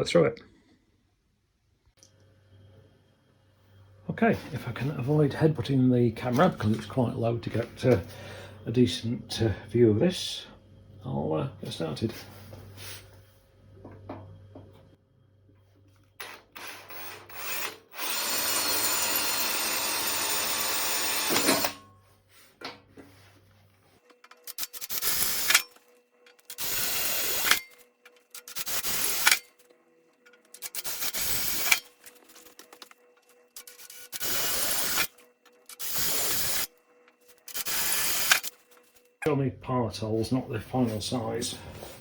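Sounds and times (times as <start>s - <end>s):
power drill drilling: 16.2s - 21.8s, 24.6s - 25.6s, 26.5s - 27.8s, 28.5s - 29.5s, 30.6s - 32.9s, 33.6s - 36.7s, 37.4s - 38.6s.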